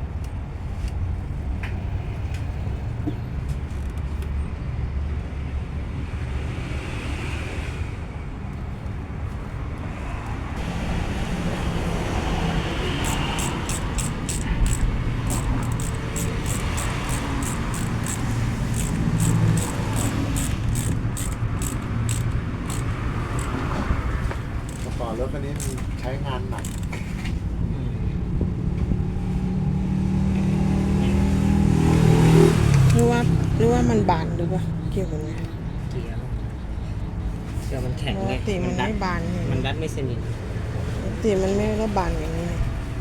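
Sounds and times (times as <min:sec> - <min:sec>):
diesel engine running: 0:10.6 - 0:27.4.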